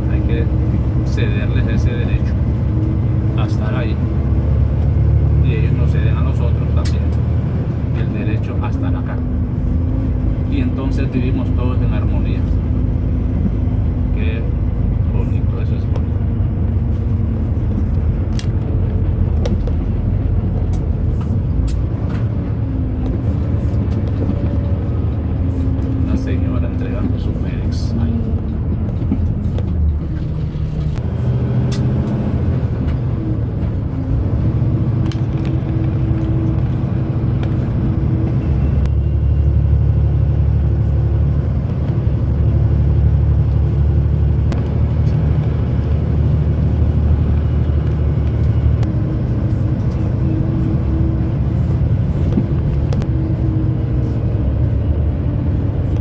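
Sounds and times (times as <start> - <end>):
truck engine drone from inside cab: 0.0 - 56.0.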